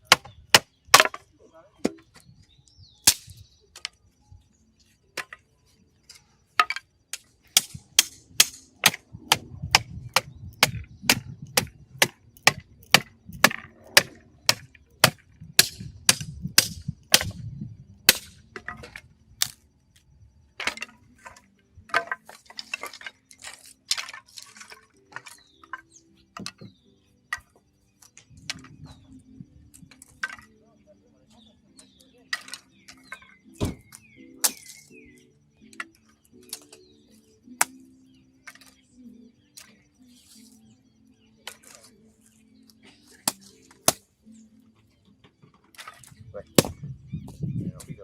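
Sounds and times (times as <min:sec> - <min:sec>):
wood being chopped: 0:00.0 - 0:02.2, 0:03.0 - 0:04.0, 0:06.6 - 0:19.6, 0:20.6 - 0:23.1, 0:32.3 - 0:34.9, 0:43.1 - 0:44.1, 0:45.8 - 0:48.0.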